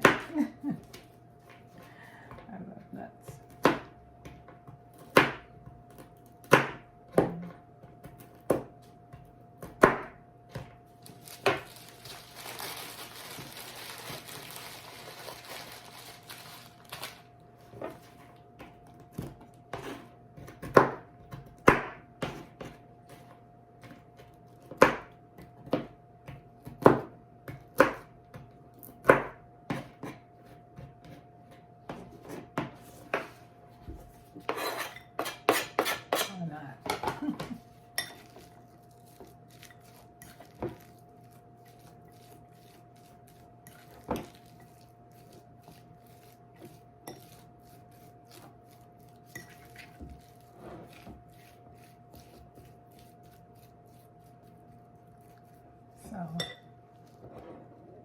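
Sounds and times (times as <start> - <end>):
knife chopping on cutting board: 3.4 - 10.7, 19.0 - 23.2, 23.8 - 31.2, 34.4 - 37.1.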